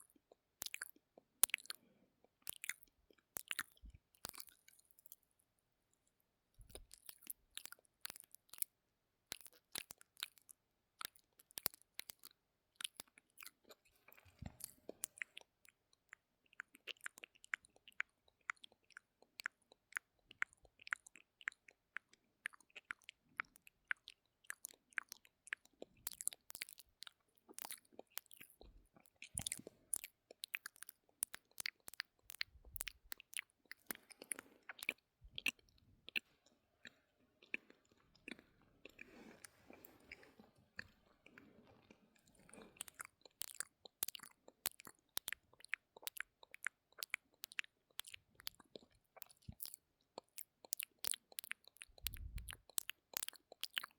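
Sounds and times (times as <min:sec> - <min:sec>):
wet mouth clicks and smacks: 0:00.0 - 0:05.2, 0:06.7 - 0:08.7, 0:09.3 - 0:53.9
breathing close to microphone: 0:37.6 - 0:43.0, 0:52.0 - 0:52.5.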